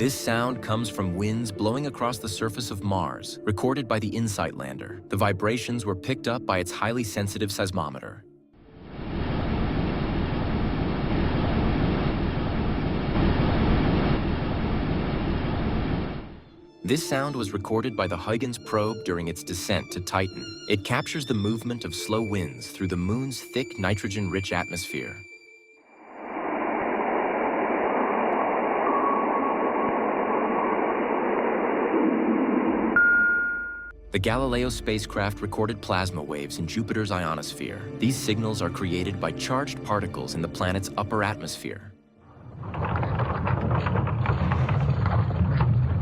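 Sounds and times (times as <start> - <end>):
wind rushing noise: 8.7 - 16.4
faint thin tone: 33.0 - 34.0.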